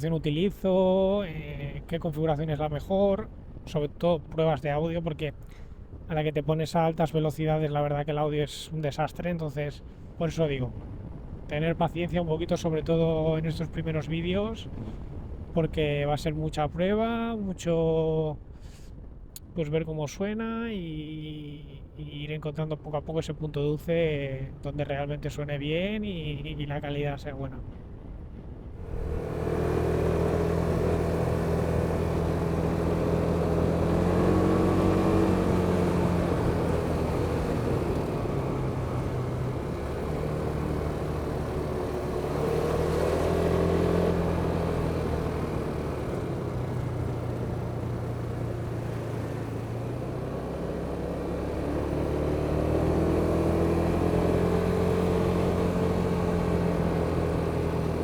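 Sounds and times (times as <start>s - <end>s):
scooter engine running: 28.8s - 58.0s.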